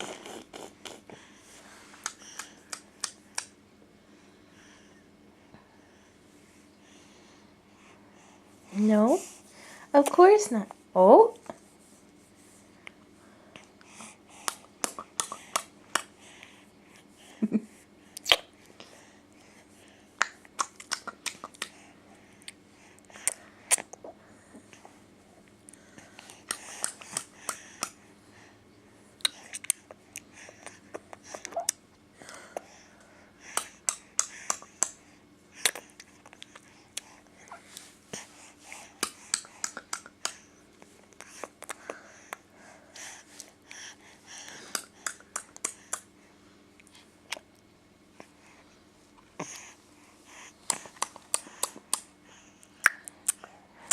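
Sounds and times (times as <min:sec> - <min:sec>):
baby mouth clicking: 0:02.0 - 0:03.5, 0:18.2 - 0:18.4, 0:20.2 - 0:21.7, 0:29.2 - 0:30.2, 0:33.6 - 0:35.0, 0:39.0 - 0:40.4, 0:44.7 - 0:46.1, 0:50.7 - 0:52.1, 0:52.8 - 0:53.9.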